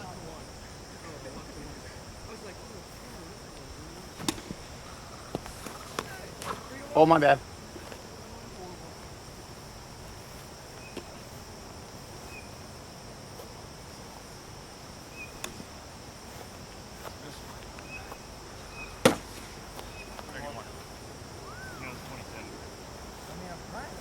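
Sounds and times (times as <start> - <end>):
insects droning: 0.0 - 24.0
sharp knock: 19.0 - 19.5.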